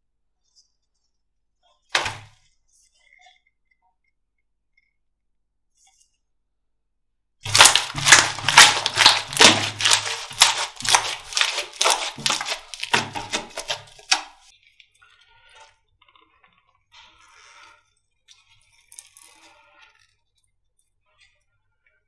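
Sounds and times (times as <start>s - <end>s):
slime crackling and popping: 7.5s - 14.4s.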